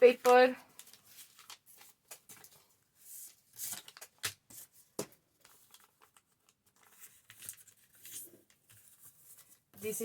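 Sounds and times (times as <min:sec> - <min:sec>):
paper rustling: 0:00.1 - 0:10.0.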